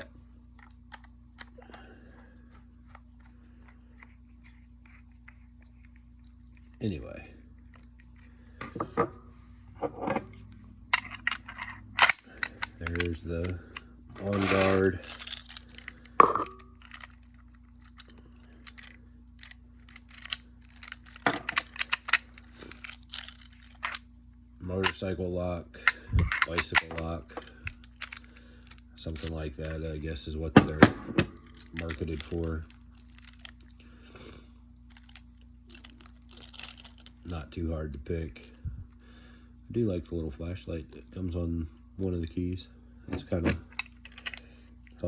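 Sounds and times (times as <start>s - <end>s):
steady low hum: 0.0s - 45.0s
metal lock parts clicking: 10.0s - 24.0s, 25.8s - 29.4s, 30.6s - 33.7s, 34.9s - 37.2s, 43.1s - 44.5s
metal lock and keys clicking: 11.0s - 13.5s, 43.1s - 44.4s.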